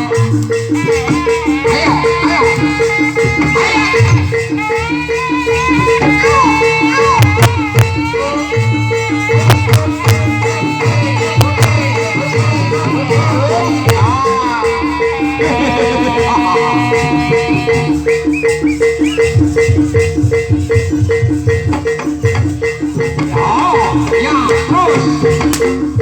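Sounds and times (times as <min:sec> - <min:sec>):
drums: 0:00.0 - 0:26.0
tuned percussion pattern: 0:00.0 - 0:26.0
wavering melody line: 0:00.0 - 0:26.0
sharp percussive clicks: 0:25.4 - 0:25.9.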